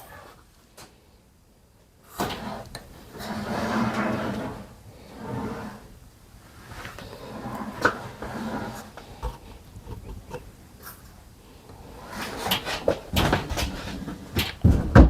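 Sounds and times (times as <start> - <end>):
furniture being shifted by hand: 2.2 - 5.9, 6.6 - 10.4
scraping and rubbing: 2.2 - 5.9, 6.6 - 11.2.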